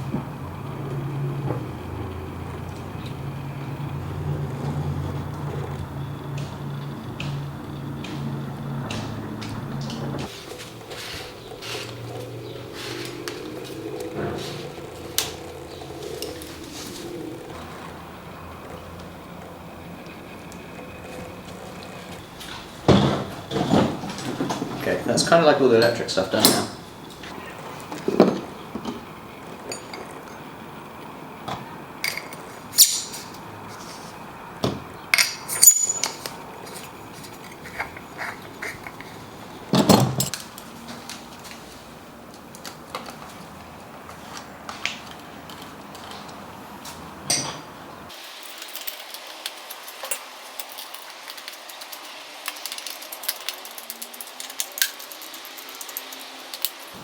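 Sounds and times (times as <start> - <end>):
metal tools and parts clinking: 22.4 - 26.9, 29.6 - 30.4, 32.0 - 33.4, 35.0 - 40.4, 47.2 - 47.7, 49.8 - 57.0.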